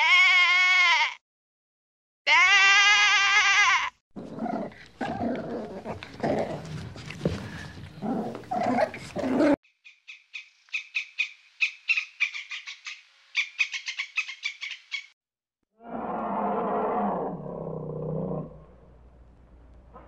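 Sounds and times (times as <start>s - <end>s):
low drawn-out animal call: 15.8s - 18.9s.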